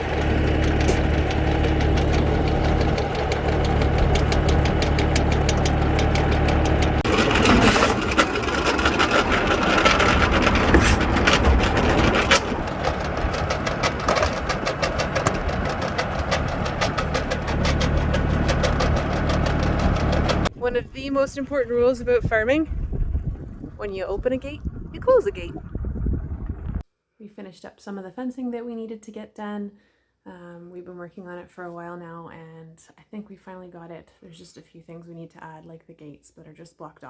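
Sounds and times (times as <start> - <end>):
engine idling with ticking clatter: 0.0 - 20.5.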